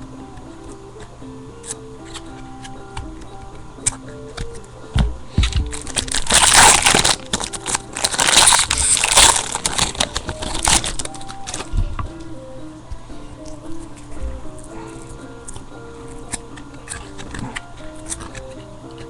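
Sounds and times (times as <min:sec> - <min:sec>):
background music: 0:00.0 - 0:19.0
card packs crinkling: 0:03.8 - 0:12.1.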